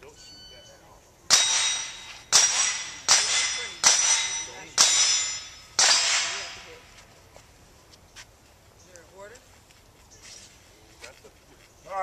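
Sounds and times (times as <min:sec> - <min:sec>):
shots clanging on steel plates: 0:01.3 - 0:06.9.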